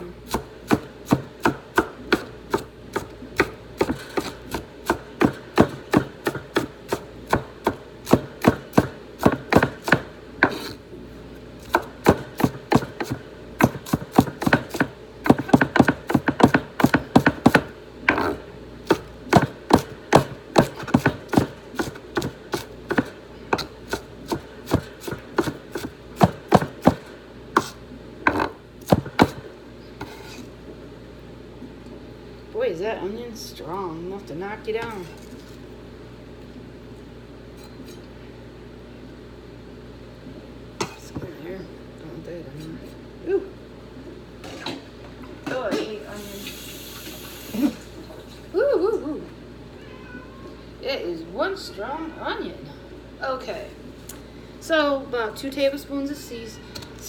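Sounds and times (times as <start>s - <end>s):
knife chopping onion on board: 0.3s - 10.8s, 11.6s - 30.4s.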